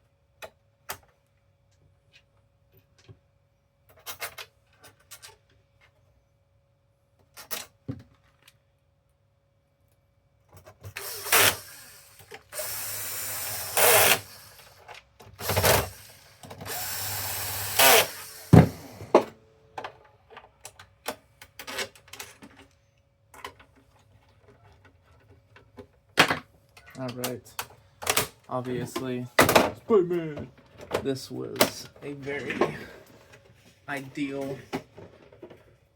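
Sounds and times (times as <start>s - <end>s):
electric screwdriver running: 10.9s - 14.8s, 15.4s - 19.2s.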